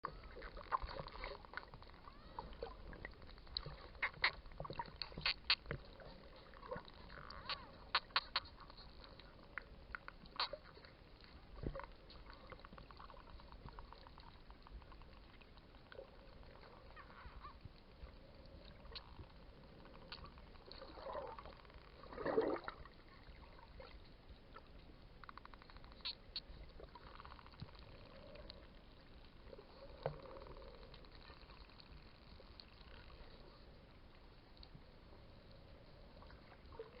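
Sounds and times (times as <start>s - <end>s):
dolphin clicks: 0.0s - 10.9s, 25.2s - 28.6s, 29.5s - 33.2s.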